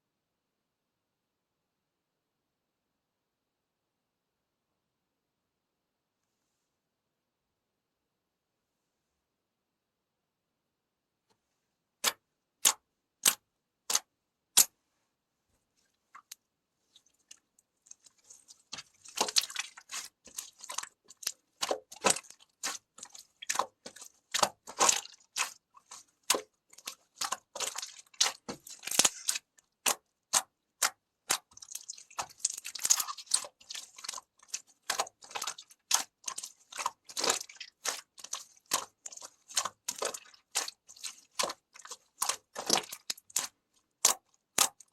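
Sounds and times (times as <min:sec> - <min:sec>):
clay crunching and crackling: 0:15.9 - 0:44.9.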